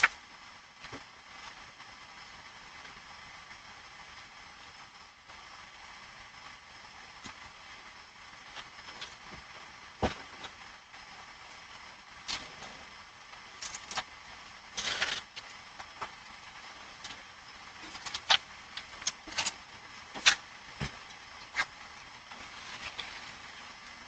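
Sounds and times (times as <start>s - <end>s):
microphone hiss: 0.0s - 24.0s.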